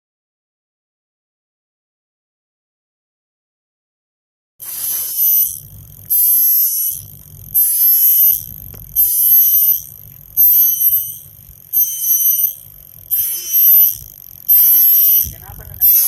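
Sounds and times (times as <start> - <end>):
cicada buzzing: 4.6 - 16.0.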